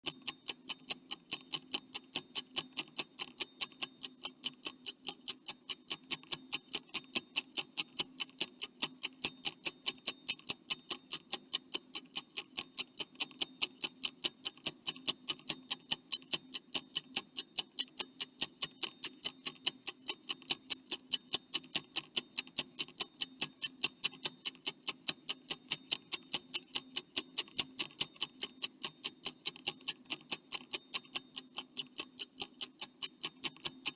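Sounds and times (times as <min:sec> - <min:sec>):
clock ticking: 0:00.0 - 0:33.9.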